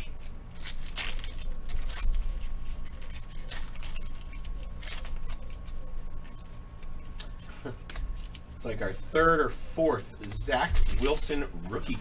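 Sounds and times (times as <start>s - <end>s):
cards sliding and rustling: 0.1s - 8.6s, 10.2s - 12.0s.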